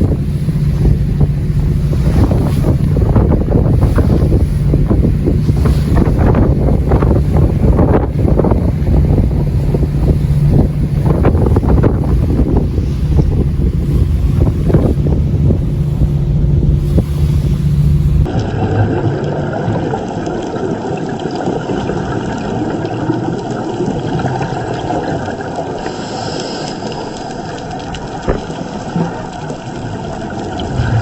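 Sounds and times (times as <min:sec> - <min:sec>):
wind buffeting microphone: 0:00.0 - 0:20.4, 0:30.0 - 0:31.0
boat engine droning: 0:00.0 - 0:31.0
water noise: 0:00.0 - 0:31.0.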